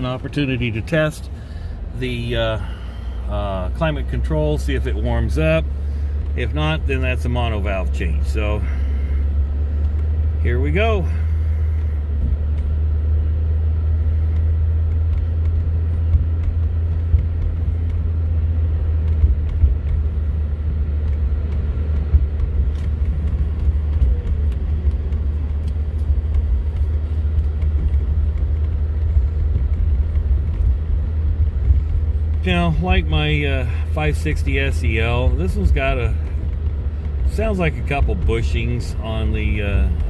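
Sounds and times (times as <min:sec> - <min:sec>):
car engine and road rumble: 0:00.0 - 0:40.0
suspension clicks and knocks: 0:09.2 - 0:10.4, 0:11.7 - 0:40.0.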